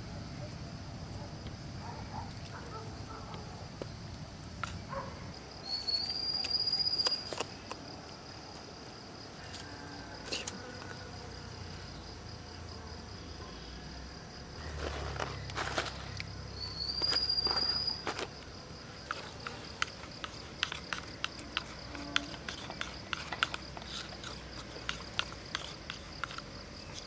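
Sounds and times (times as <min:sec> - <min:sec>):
insects chirring: 0:00.0 - 0:27.0
louder rising insect call: 0:05.5 - 0:07.4, 0:14.6 - 0:18.9.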